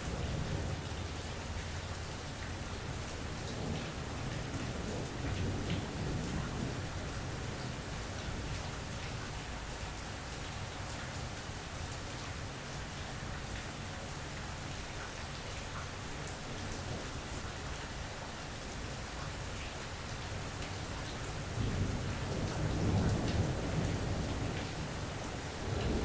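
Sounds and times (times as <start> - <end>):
low rumble of thunder: 0.0 - 12.2, 20.1 - 26.0
steady rain falling: 0.0 - 26.0.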